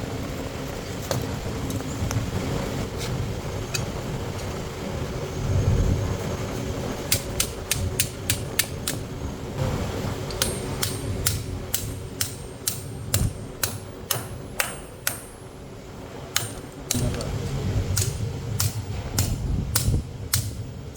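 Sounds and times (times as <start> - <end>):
steady low hum: 0.0 - 20.9
hammer striking steel: 7.1 - 9.0, 10.3 - 15.7, 16.3 - 20.9.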